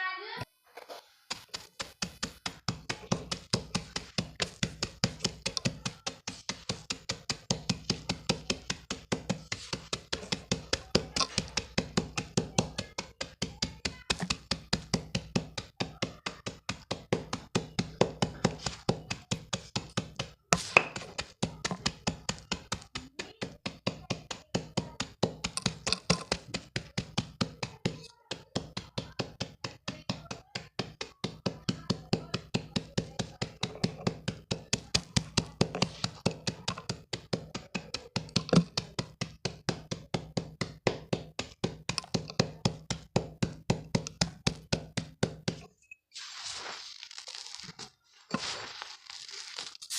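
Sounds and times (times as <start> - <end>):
chalk crunching: 0.7 - 12.4, 20.6 - 22.8, 34.9 - 37.0, 46.2 - 49.9.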